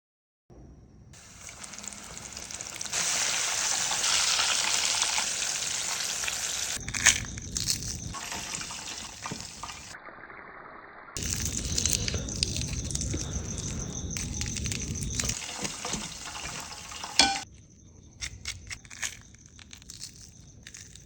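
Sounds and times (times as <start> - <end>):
chicken frying in hot oil: 1.2 - 7.2, 7.9 - 10.0, 11.2 - 17.5
oil popping and crackling: 1.2 - 10.0, 11.2 - 17.5, 18.2 - 21.0.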